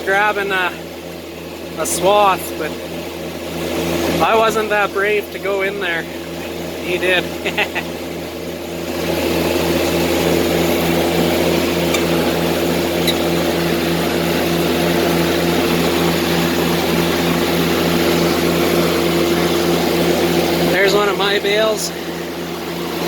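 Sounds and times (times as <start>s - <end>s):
tractor diesel engine running: 0.0s - 23.0s.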